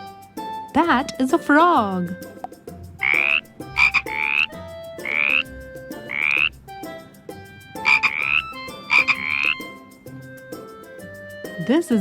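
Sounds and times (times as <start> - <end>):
frog croaking: 2.0 - 6.8, 7.8 - 9.8.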